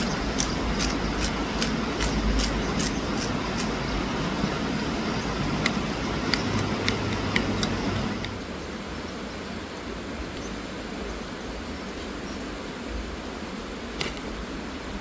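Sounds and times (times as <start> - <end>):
sharp clicks: 0.0 - 3.8, 5.6 - 8.4
river flowing: 0.0 - 11.7.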